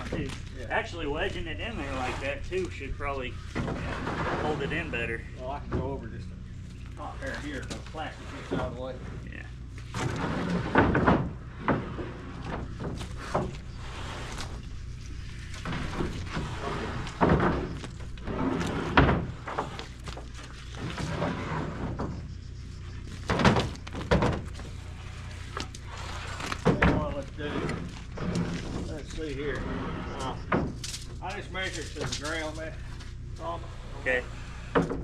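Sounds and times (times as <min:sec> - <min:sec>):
wooden boards knocking: 0:15.6 - 0:19.8.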